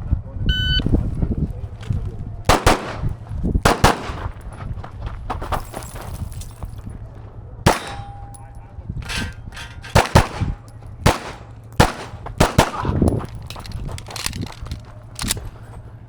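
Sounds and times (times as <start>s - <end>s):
pistol shots: 2.5s - 4.6s, 7.7s - 15.6s.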